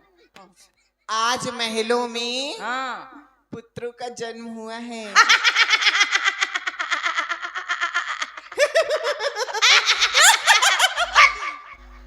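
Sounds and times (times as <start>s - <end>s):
person giggling: 5.1s - 12.0s.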